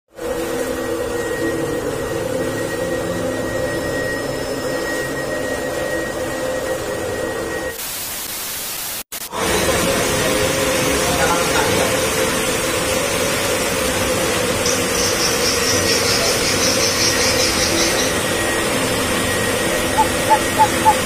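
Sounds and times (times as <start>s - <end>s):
low tonal hum: 0.2s - 7.7s, 16.6s - 21.0s
thin high whine: 0.2s - 8.2s, 9.3s - 21.0s
static hiss: 7.8s - 9.4s.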